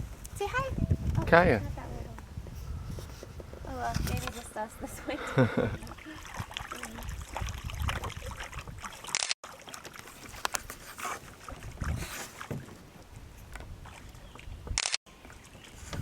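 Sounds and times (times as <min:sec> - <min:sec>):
water sloshing and dripping: 0:03.4 - 0:16.0.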